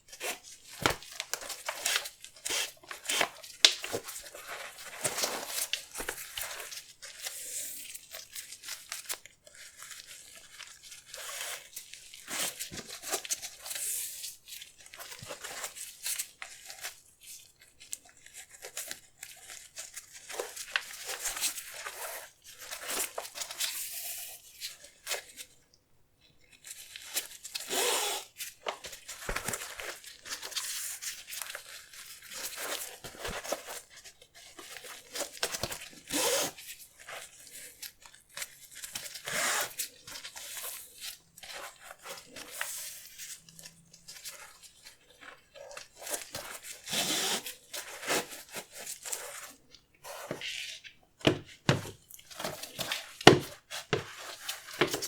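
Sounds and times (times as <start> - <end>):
paper crinkling and rustling: 0.0 - 25.6, 26.4 - 55.0
paper tearing: 46.8 - 48.5.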